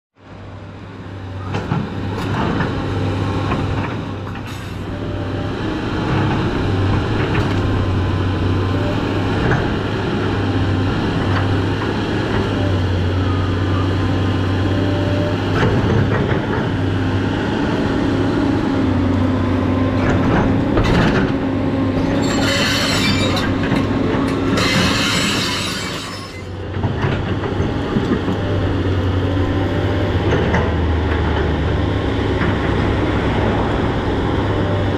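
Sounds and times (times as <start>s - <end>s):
excavator engine drone: 0.2s - 34.9s
metallic whines: 21.9s - 26.6s.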